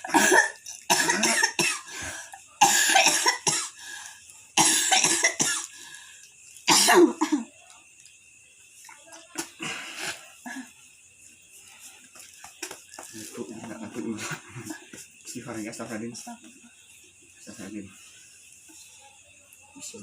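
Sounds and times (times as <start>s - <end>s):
person coughing hard: 0.0s - 1.9s, 2.6s - 3.8s, 4.6s - 5.7s, 6.7s - 7.5s.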